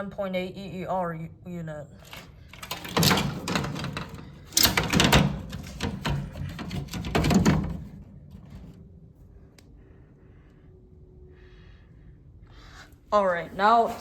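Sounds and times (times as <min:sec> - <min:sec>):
fast rattling clicks: 0:02.0 - 0:07.8
rubbing and scraping handling noise: 0:02.0 - 0:09.0.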